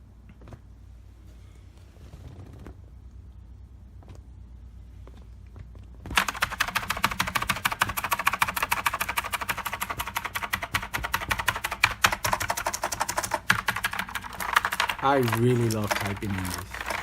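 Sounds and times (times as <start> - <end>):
mechanical keyboard clicking keystrokes: 6.1 - 17.0.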